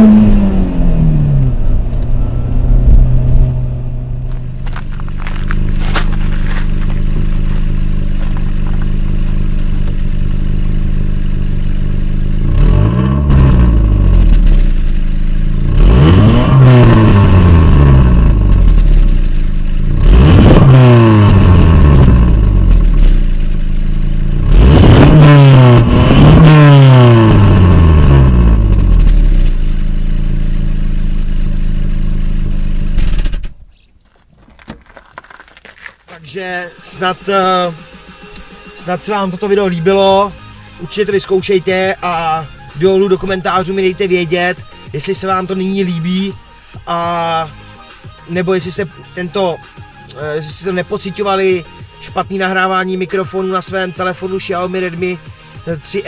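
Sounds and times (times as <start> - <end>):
car engine accelerating: 0.0 - 33.6
low road rumble: 0.0 - 56.0.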